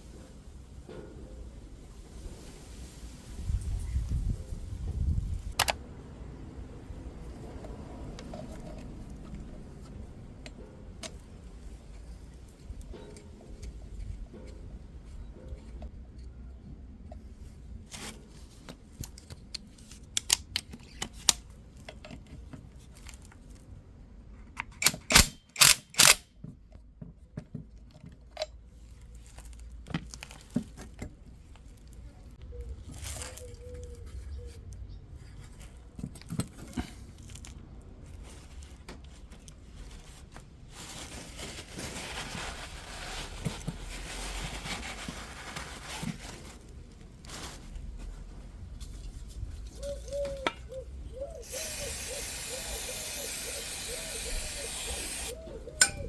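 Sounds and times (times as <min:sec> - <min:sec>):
clicks and clinks of tools: 0:24.6 - 0:26.2, 0:53.2 - 0:56.0.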